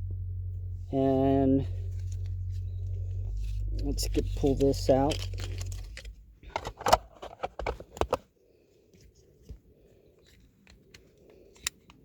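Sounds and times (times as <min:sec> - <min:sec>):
packaging crinkling and clicking: 0:05.1 - 0:08.2.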